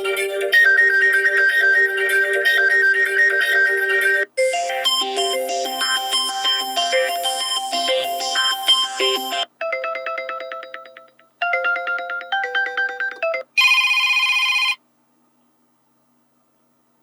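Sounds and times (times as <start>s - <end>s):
buzzy phone ring: 0.0s - 14.8s
phone ringtone electronic melody: 0.0s - 14.8s
plucked chiming ringtone phrases: 4.4s - 14.8s.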